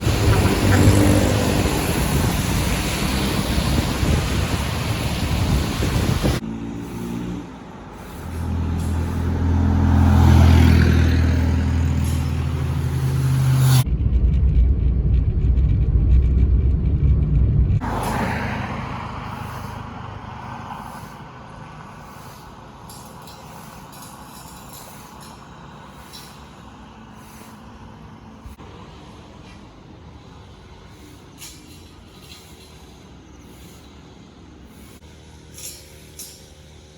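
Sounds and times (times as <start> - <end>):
vehicle engine droning: 0.0 - 36.9.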